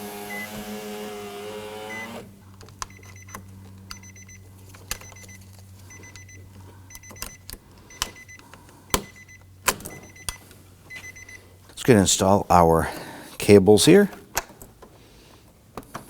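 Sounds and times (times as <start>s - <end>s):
car warning chime dinging: 2.9s - 11.5s.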